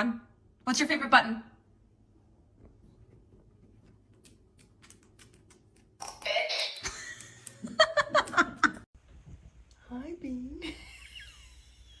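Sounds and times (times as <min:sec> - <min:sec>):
dog claws clicking on hard floor: 0:03.6 - 0:06.1.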